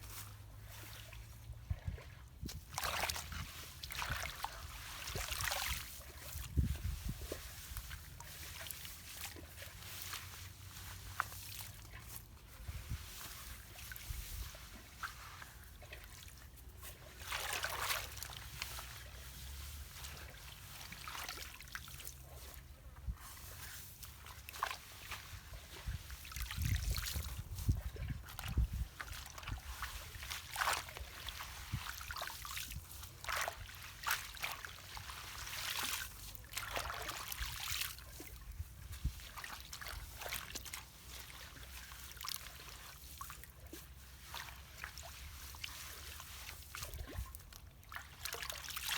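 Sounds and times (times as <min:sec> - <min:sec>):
water trickling and sloshing: 0:00.0 - 0:48.9
water splashing: 0:17.1 - 0:22.2, 0:28.0 - 0:38.4, 0:39.1 - 0:48.9.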